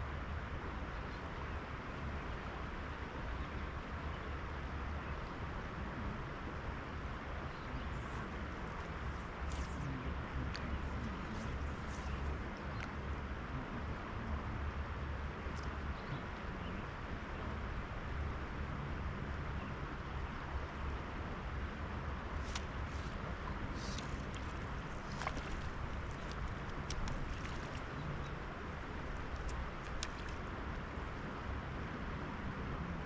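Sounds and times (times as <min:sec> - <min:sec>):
river water rushing: 0:22.2 - 0:31.6
small clicks and ticks: 0:29.0 - 0:30.4.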